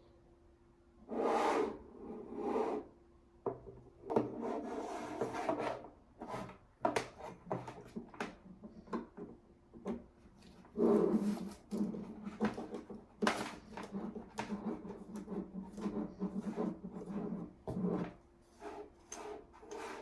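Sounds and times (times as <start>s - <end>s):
scraping and rubbing of packaging: 10.5s - 20.0s.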